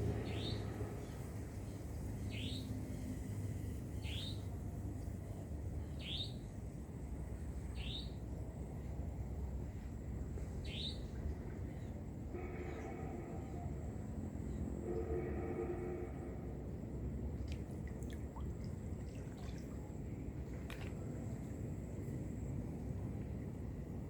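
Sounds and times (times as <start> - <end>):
steady low rumble: 0.0 - 24.0.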